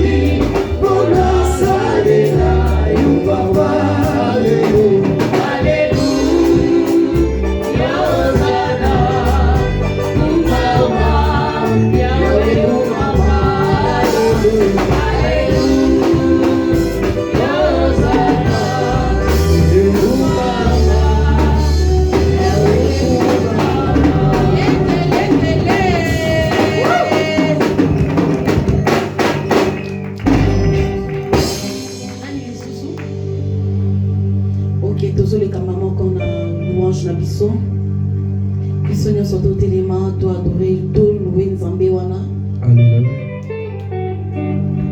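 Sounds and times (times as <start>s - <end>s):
choir singing: 0.0s - 28.0s
band with keyboard and bass: 0.0s - 44.9s.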